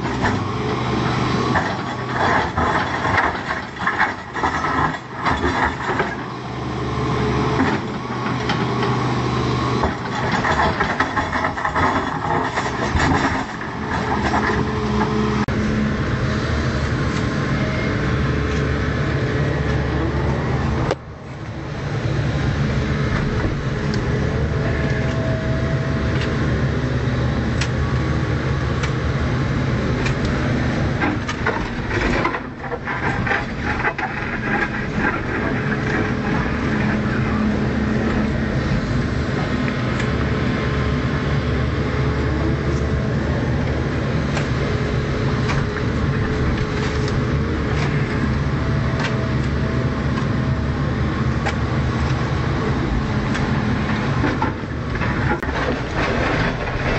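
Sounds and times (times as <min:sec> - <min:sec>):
excavator diesel engine running: 0:00.0 - 0:56.9
digging knocking and scraping: 0:31.0 - 0:38.8.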